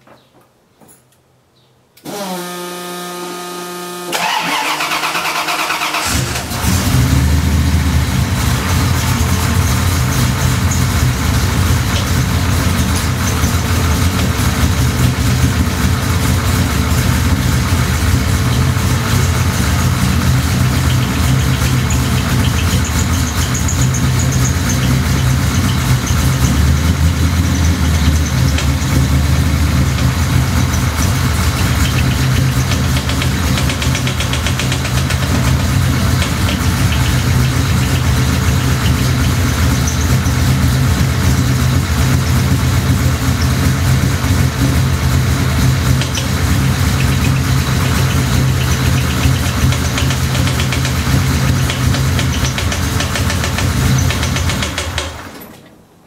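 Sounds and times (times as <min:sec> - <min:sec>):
car engine cranking: 0:02.0 - 0:55.9
steady buzzing tone: 0:02.1 - 0:04.2
car engine idling: 0:03.4 - 0:55.3
whistling knocking engine noise: 0:19.9 - 0:29.2, 0:45.8 - 0:55.4.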